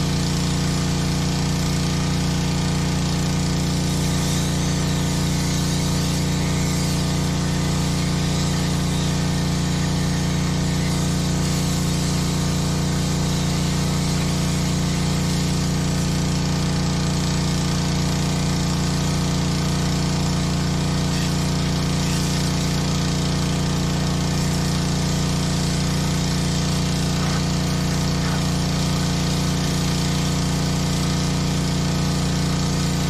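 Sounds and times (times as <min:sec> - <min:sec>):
high-pressure water spray hissing: 0:00.0 - 0:33.0
pressure washer engine running: 0:00.0 - 0:33.0.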